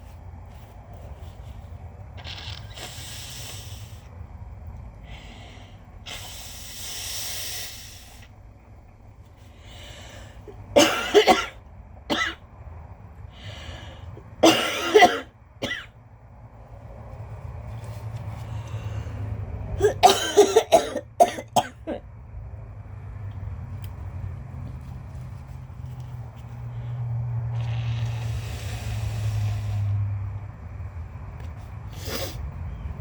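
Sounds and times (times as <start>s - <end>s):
woman breathing noisily: 2.6s - 4.2s, 4.9s - 8.5s, 9.4s - 10.7s, 13.2s - 14.4s, 18.2s - 19.8s, 26.6s - 30.2s
woman coughing: 10.8s - 12.4s, 14.4s - 15.8s, 19.8s - 22.0s.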